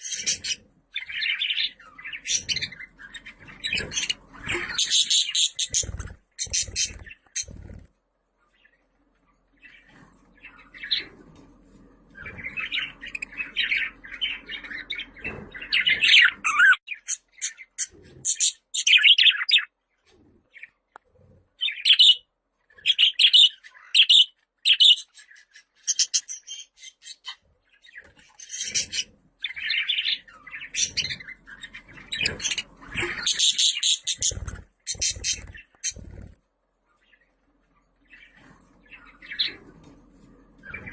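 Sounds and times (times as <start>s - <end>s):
budgerigar chirping and warbling: 0.0s - 7.6s, 15.7s - 19.7s, 28.4s - 36.1s.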